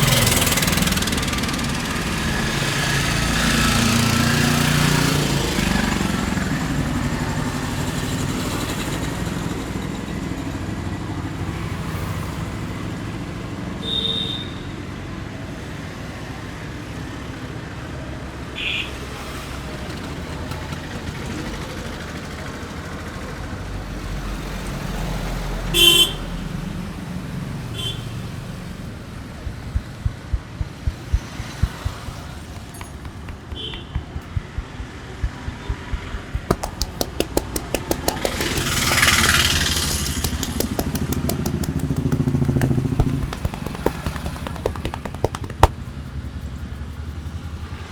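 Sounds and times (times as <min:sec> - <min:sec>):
street traffic: 0:00.0 - 0:47.9
sharp regular taps: 0:29.3 - 0:47.6.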